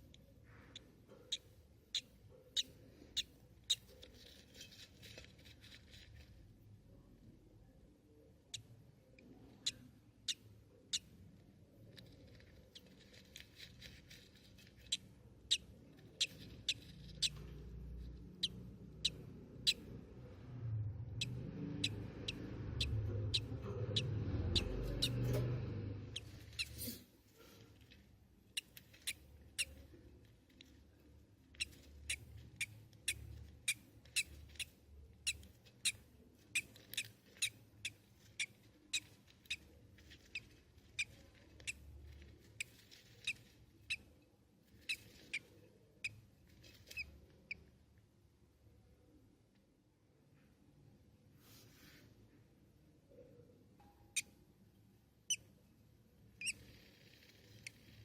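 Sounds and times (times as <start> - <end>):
budgie chick peeping: 0.0 - 7.2, 8.3 - 20.4, 21.0 - 47.8, 56.2 - 58.0
low rumbling noise: 17.5 - 26.6.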